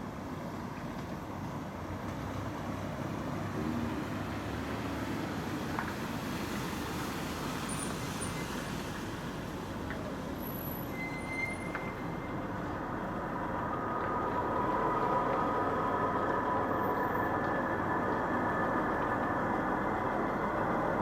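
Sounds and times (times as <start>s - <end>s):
low rumbling drone in the sky: 13.2s - 21.0s.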